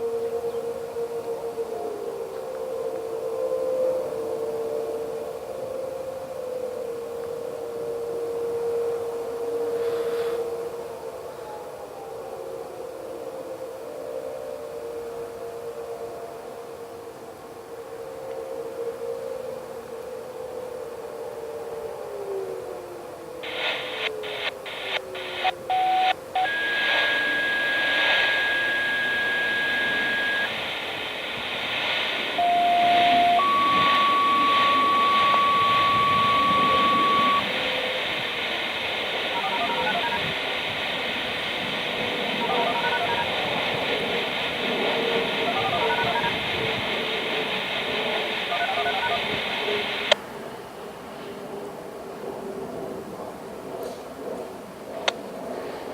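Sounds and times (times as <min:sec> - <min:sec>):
dual-tone digit beeps: 0:23.4 - 0:30.7, 0:32.3 - 0:37.6, 0:39.3 - 0:40.4, 0:42.4 - 0:43.6, 0:45.4 - 0:46.8, 0:48.1 - 0:50.2
siren activation beeps: 0:23.4 - 0:40.5, 0:41.2 - 0:50.2
radio hiss: 0:23.4 - 0:50.2.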